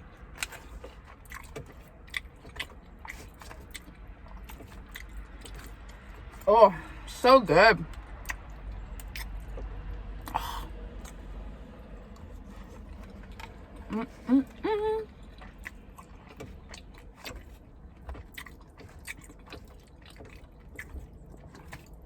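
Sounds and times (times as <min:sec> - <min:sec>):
close-up chewing: 0:00.0 - 0:07.0, 0:07.8 - 0:22.0
wet mouth clicks and smacks: 0:07.9 - 0:11.2
short hummed voice: 0:13.9 - 0:15.2.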